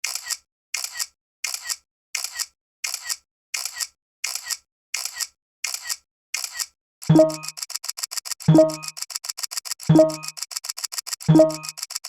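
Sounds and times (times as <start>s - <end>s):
quick bright clicks: 5.0s - 12.0s.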